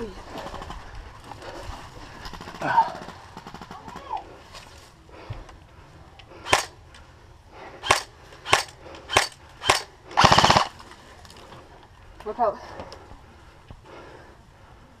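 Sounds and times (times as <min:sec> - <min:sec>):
airsoft gun shots: 0:06.5 - 0:06.7, 0:07.8 - 0:10.7.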